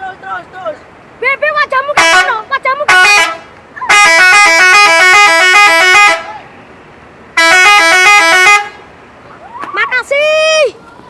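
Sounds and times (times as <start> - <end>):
tuned air horns melody: 2.0 - 6.4, 7.4 - 8.9.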